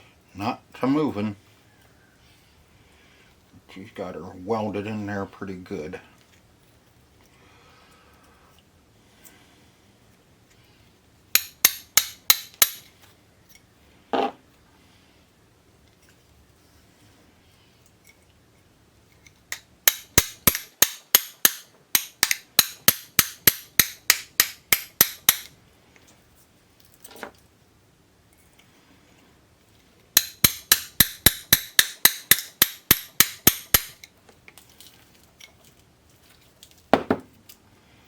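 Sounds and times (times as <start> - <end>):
small hammer tapping on metal: 11.4 - 12.9, 19.5 - 25.5, 30.2 - 34.1.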